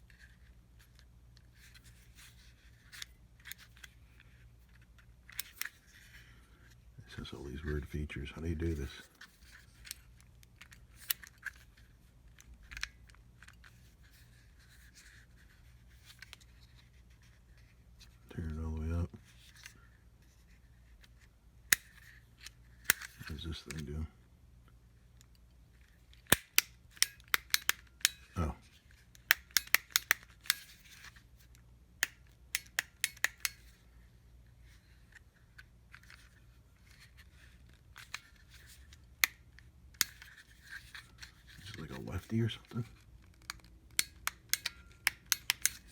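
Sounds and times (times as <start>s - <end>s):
plastic clicks of torch switches: 21.7s - 23.9s, 26.2s - 28.4s, 29.1s - 33.8s, 38.0s - 41.8s, 42.9s - 45.9s.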